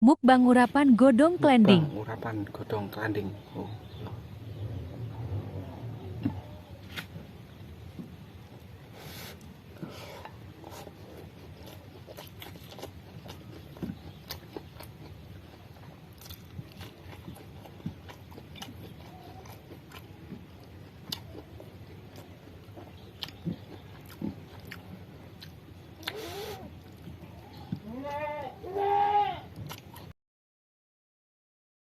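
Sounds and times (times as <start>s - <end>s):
person chewing: 8.4s - 28.2s, 29.5s - 30.1s.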